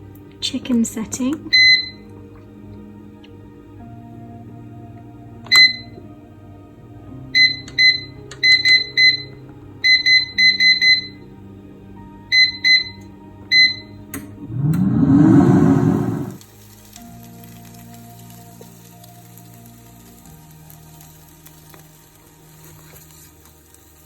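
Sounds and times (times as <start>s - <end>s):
background music: 0.0s - 24.0s
low rising whir: 14.3s - 16.4s.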